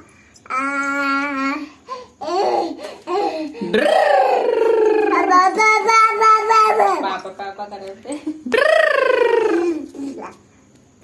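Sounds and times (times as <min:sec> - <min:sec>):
toddler imitating a motorbike: 0:00.5 - 0:07.1, 0:08.6 - 0:10.4.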